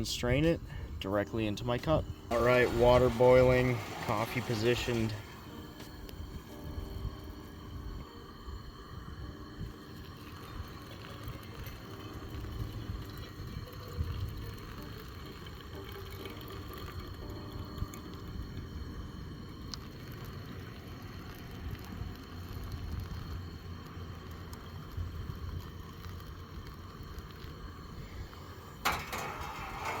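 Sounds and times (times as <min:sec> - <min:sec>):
steady low rumble: 0:00.0 - 0:30.0
water pouring into a cup: 0:02.3 - 0:05.4, 0:09.7 - 0:18.7, 0:19.5 - 0:28.0.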